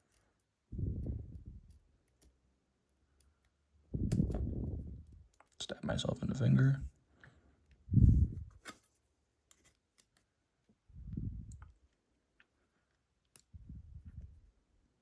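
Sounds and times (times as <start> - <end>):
muffled low bumps: 7.9 - 8.6, 10.9 - 11.6.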